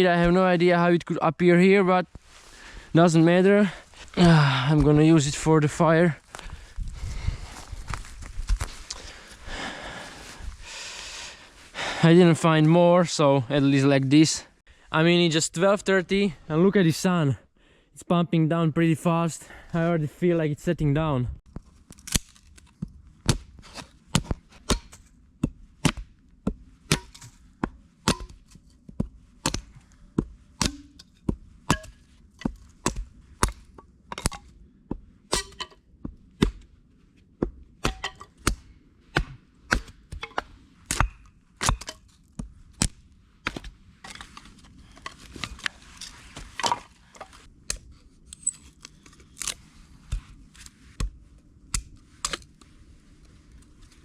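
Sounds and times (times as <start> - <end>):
axe chopping wood: 22.0 - 36.7, 37.4 - 43.8.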